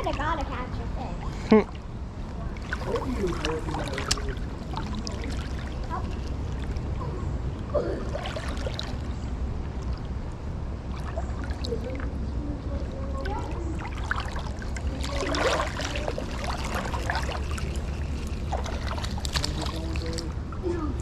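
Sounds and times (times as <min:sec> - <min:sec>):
small water splashes: 0:02.5 - 0:07.1, 0:07.9 - 0:20.8
river water flowing: 0:13.2 - 0:20.8.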